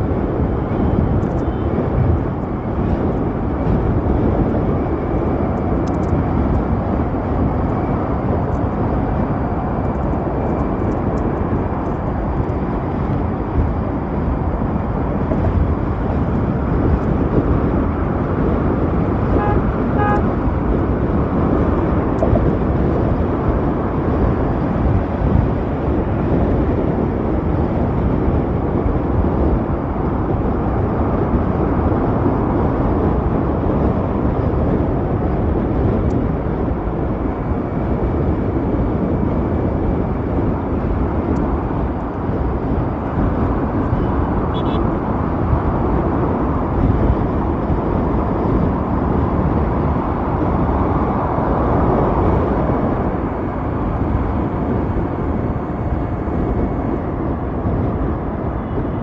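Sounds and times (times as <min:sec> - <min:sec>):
road noise: 0:00.0 - 0:59.0
wind rushing: 0:00.0 - 0:59.0
scooter horn toots: 0:19.4 - 0:20.4, 0:44.0 - 0:44.9.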